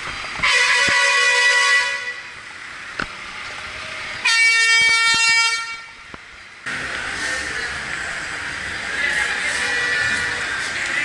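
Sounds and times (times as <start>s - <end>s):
vehicle horn blasts: 0.4s - 2.3s, 4.2s - 6.0s.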